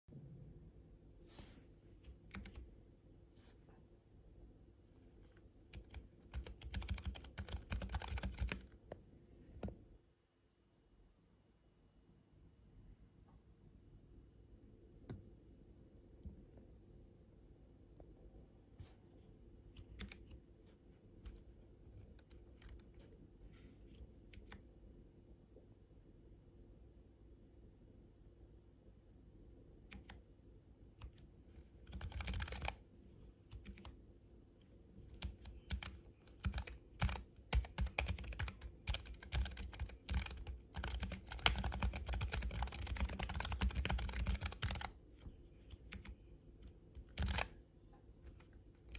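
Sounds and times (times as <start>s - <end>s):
keyboard typing: 2.0s - 2.7s, 5.3s - 9.8s, 19.7s - 20.4s, 21.2s - 23.1s, 24.0s - 24.7s, 29.9s - 30.2s, 31.0s - 32.8s, 33.5s - 34.0s, 35.0s - 47.6s.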